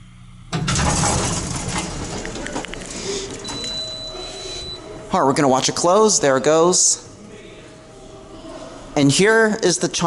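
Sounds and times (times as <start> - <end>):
elevator doors opening: 0.5 - 6.1.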